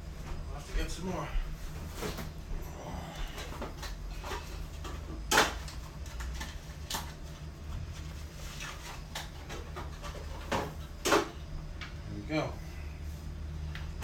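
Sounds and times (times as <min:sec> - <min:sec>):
low steady hum: 0:00.0 - 0:14.0
kitchen items knocking and clicking: 0:03.4 - 0:07.2, 0:09.1 - 0:11.4.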